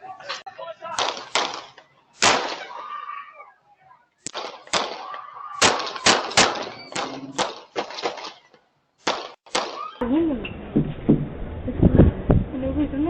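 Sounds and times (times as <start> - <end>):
gunshots: 0.9 - 2.9, 4.2 - 10.0.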